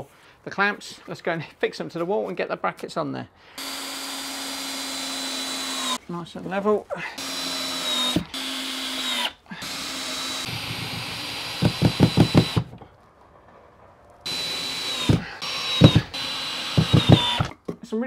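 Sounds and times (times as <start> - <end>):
power drill whining: 3.6 - 6.0, 7.2 - 12.9, 14.3 - 17.6
rapid knocks: 10.5 - 12.9, 14.6 - 17.5.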